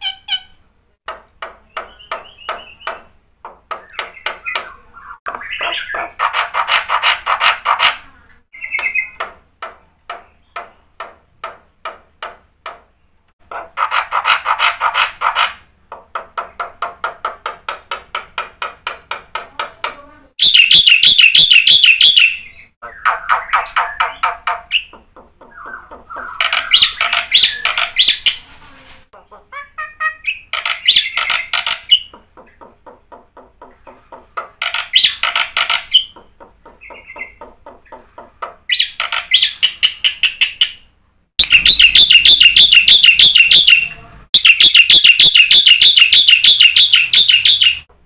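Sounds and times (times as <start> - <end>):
myna bird singing: 0.1 - 11.6, 19.3 - 28.4, 29.2 - 47.9.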